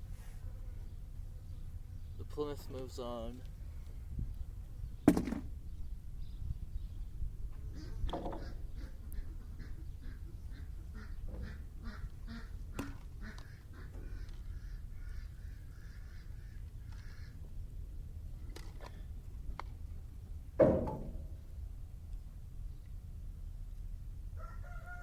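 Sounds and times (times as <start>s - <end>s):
duck quacking: 7.8s - 17.4s
sharp clack: 20.6s - 21.4s.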